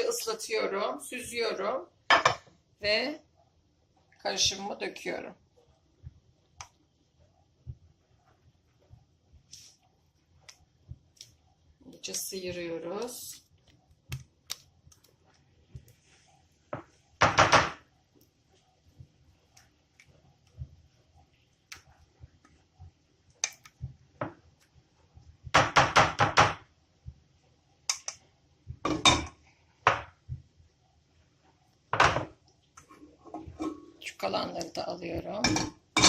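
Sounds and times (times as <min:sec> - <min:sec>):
spatula scraping a pot: 0:32.8 - 0:34.1.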